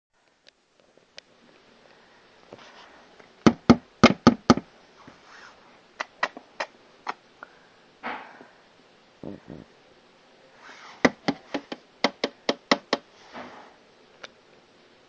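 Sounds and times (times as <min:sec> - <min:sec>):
sharp knocks: 0:03.5 - 0:04.7, 0:11.0 - 0:13.1.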